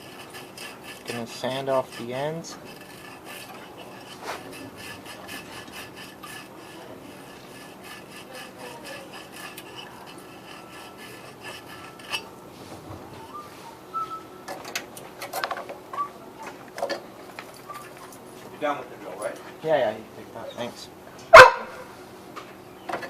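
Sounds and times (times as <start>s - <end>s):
sandpaper rubbing copper pipe: 0.0s - 13.8s.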